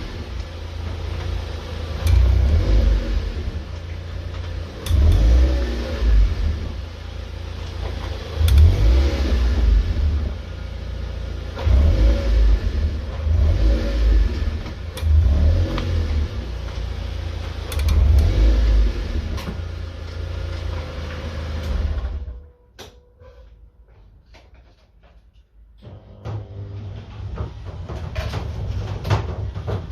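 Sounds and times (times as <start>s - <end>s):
car engine and road rumble: 0.0s - 23.5s.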